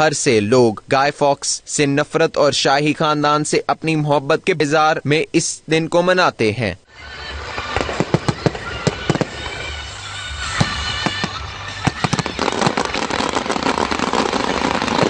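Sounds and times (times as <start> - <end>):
fireworks crackling: 7.0 - 15.0
fireworks bangs: 7.1 - 15.0.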